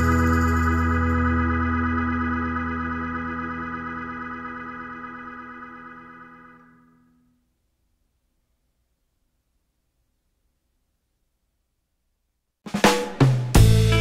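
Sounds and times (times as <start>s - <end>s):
held organ-like keyboard chord: 0.0s - 7.1s.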